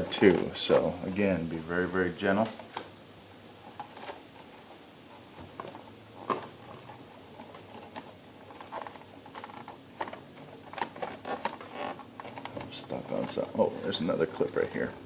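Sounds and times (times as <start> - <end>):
plastic clicks and scraping: 3.7 - 4.5, 5.3 - 13.6.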